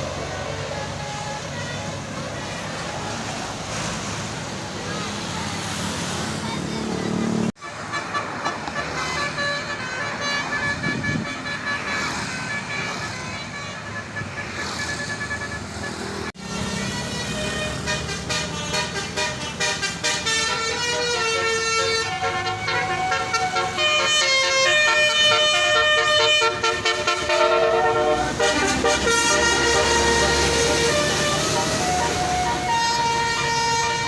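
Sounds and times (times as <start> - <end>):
voices: 0.0 - 7.5, 8.1 - 19.6
street noise: 0.0 - 34.0
bus musical air horn tune: 7.5 - 34.0.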